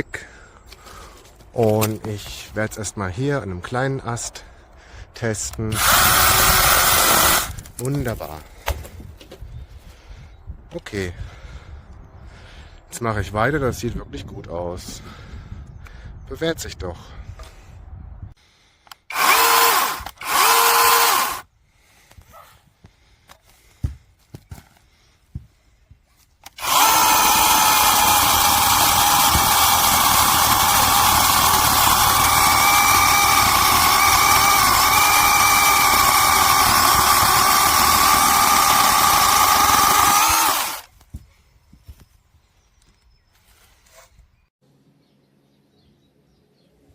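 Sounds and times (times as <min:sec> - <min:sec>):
chainsaw cutting branch: 0:05.7 - 0:07.7, 0:19.1 - 0:21.4, 0:26.5 - 0:40.9
chainsaw trigger bursts: 0:05.7 - 0:07.7, 0:18.9 - 0:21.4, 0:26.4 - 0:40.9.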